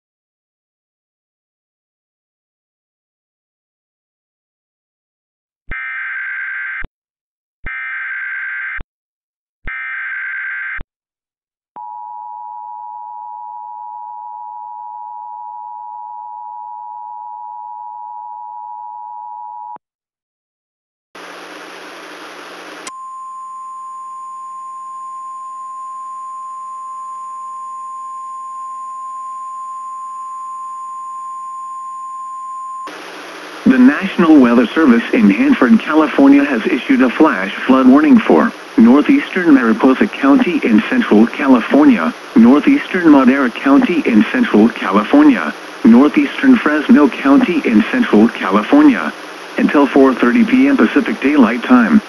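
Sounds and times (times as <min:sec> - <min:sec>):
burst of static: 0:21.2 - 0:22.9, 0:32.9 - 0:52.0
radio hiss: 0:21.2 - 0:22.9, 0:32.9 - 0:52.0.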